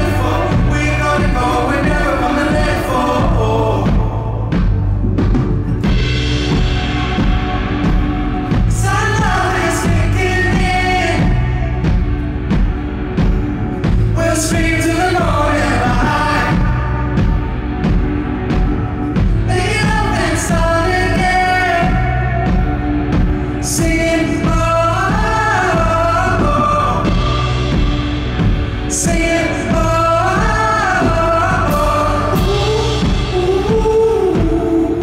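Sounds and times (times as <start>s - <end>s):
person singing: 0.0s - 5.0s, 5.8s - 12.6s, 13.8s - 35.0s
band playing pop music: 0.0s - 35.0s.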